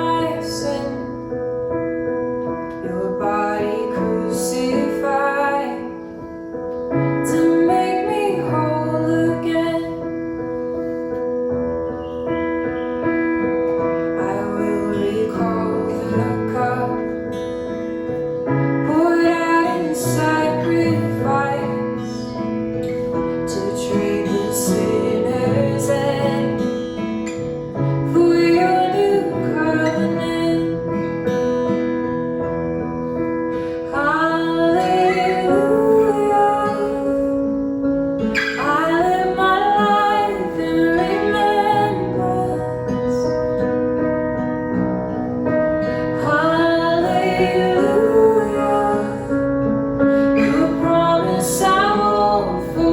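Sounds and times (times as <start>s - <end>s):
woman singing: 0.0s - 1.3s, 2.7s - 6.2s, 7.2s - 10.2s, 14.1s - 17.4s, 18.8s - 22.4s, 23.4s - 26.8s, 28.0s - 30.9s, 33.8s - 43.6s, 45.8s - 52.9s
guitar accompaniment: 0.0s - 52.9s.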